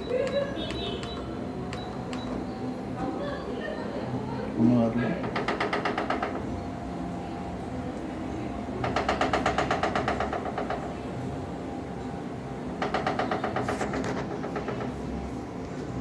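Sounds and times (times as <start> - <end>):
treadmill humming: 0.0 - 16.0
rapid motor knocking: 5.2 - 6.4, 8.8 - 10.9, 12.8 - 15.0.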